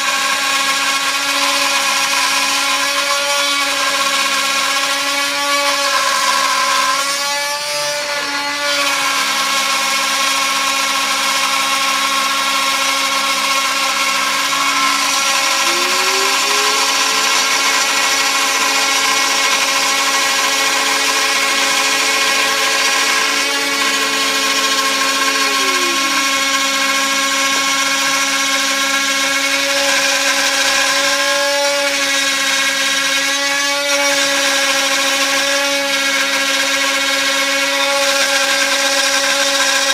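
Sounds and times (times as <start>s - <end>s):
router cutting wood: 0.0s - 39.9s
router spindle whine: 0.0s - 39.9s
rising whine tone: 14.1s - 19.1s, 23.0s - 27.2s.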